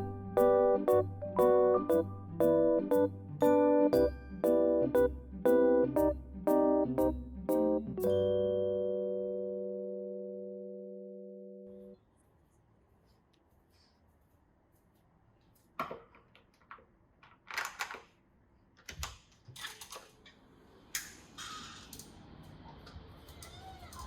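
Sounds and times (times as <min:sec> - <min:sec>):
background music: 0:00.0 - 0:11.6.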